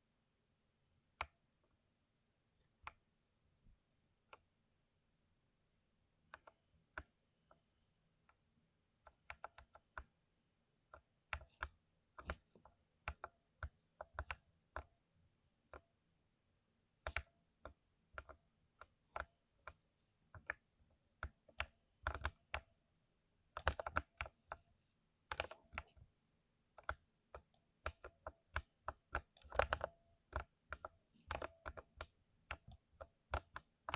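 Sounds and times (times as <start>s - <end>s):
typing on mechanical keyboard: 26.8s - 33.9s.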